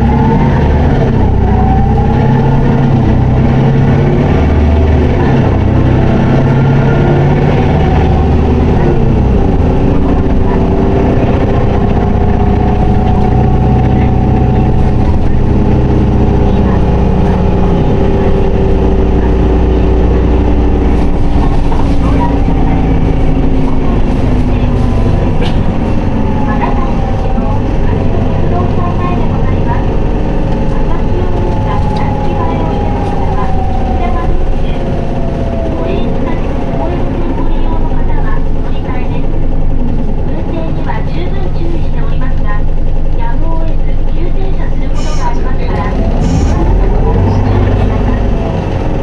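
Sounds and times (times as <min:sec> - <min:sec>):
bus diesel engine running: 0:00.0 - 0:49.0
whine gliding in pitch: 0:22.2 - 0:37.4.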